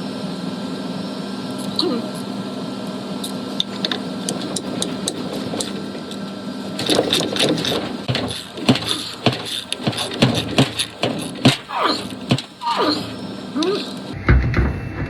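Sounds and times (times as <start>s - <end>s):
low machine hum: 0.0s - 15.0s
clicks and knocks of tools: 3.2s - 6.2s.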